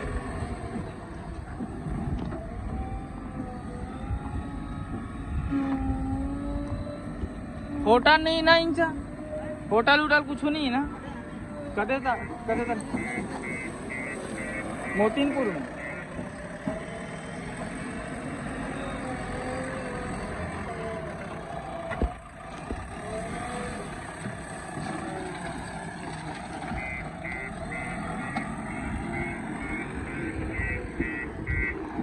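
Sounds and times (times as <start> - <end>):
diesel engine under load: 0.0 - 32.0
reversing alarm beeping: 2.4 - 20.5, 26.7 - 32.0.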